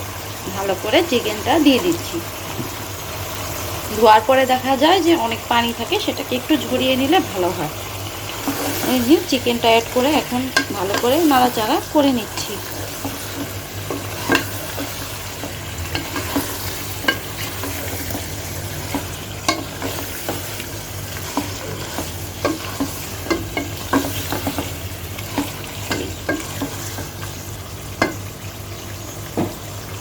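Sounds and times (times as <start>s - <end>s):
chicken sizzling in a pot: 0.0s - 30.0s
utensil scraping a pan: 8.3s - 27.4s.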